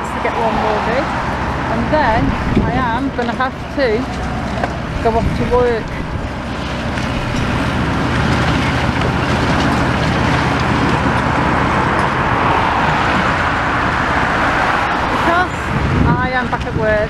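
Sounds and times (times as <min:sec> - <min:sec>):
low engine hum: 0:00.0 - 0:17.0
vehicle passing by: 0:00.0 - 0:17.0.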